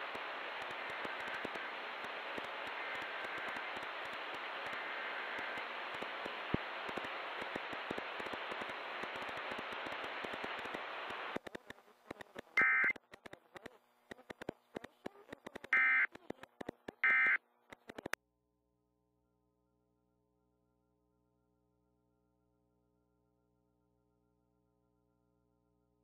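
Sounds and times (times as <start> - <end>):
radio static hiss with crackling: 0.0 - 18.2
faint data tones: 12.2 - 13.0, 15.3 - 18.2.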